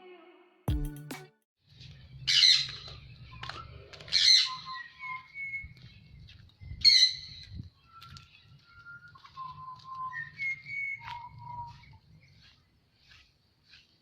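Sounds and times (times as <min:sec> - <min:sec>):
bird whistled notes: 0:07.8 - 0:12.0.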